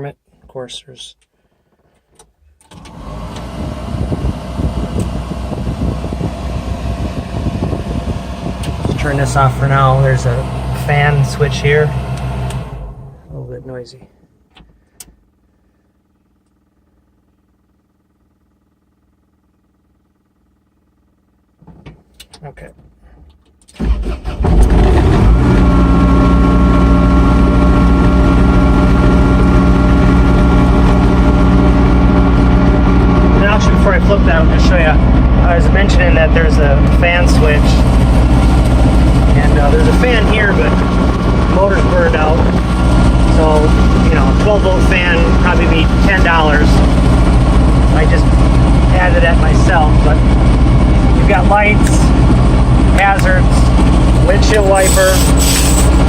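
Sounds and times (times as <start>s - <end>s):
diesel mower engine starting: 2.6s - 13.5s, 23.7s - 56.0s.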